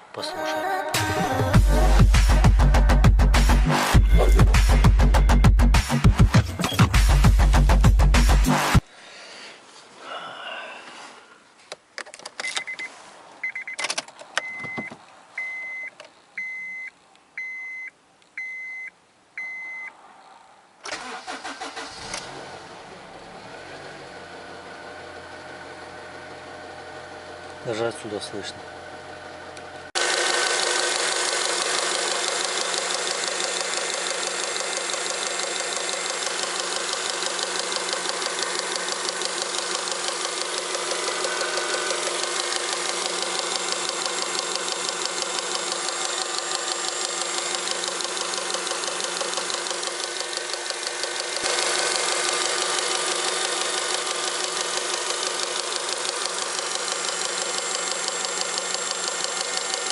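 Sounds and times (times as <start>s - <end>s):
car engine idling: 21.0s - 59.9s.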